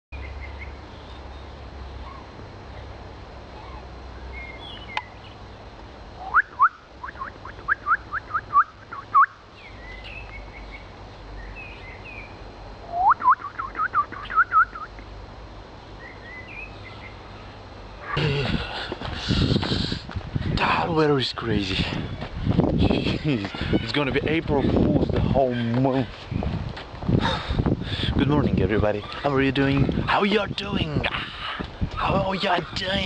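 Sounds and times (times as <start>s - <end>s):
songbird trilling: 6.2s - 15.0s, 16.0s - 18.2s, 28.8s - 33.0s.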